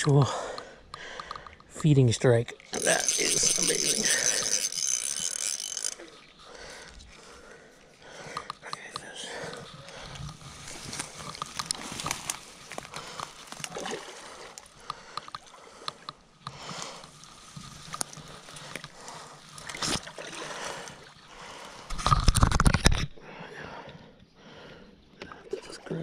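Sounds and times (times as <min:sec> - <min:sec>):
water sloshing and splashing: 0:09.2 - 0:22.4.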